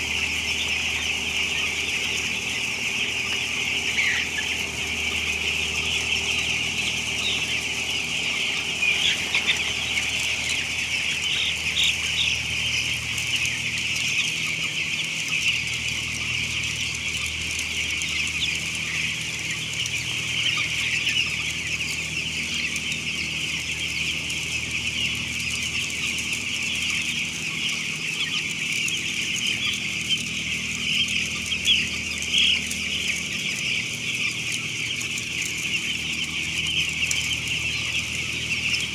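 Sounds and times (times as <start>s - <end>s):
steady low hum: 0.0s - 27.4s
chicks peeping: 0.0s - 38.9s.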